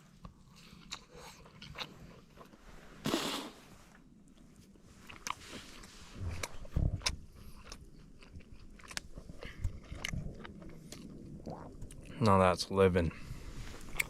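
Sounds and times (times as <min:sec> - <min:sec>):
chewing with wet mouth clicks: 0:00.2 - 0:02.6, 0:04.3 - 0:12.4, 0:13.8 - 0:14.0.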